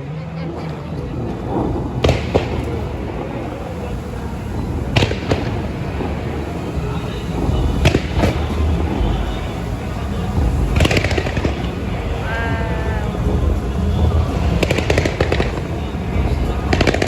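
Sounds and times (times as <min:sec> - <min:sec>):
distant fireworks rumble: 0:00.9 - 0:17.0
fireworks sharp bangs: 0:01.2 - 0:17.0.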